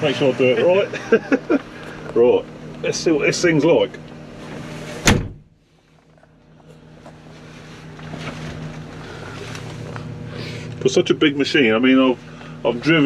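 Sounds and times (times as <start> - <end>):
loud thump: 5.0 - 5.5.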